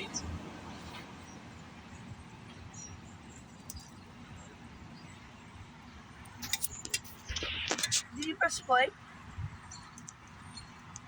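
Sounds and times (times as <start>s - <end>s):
outdoor background hiss: 0.0s - 11.0s
sharp clicks: 9.9s - 10.3s.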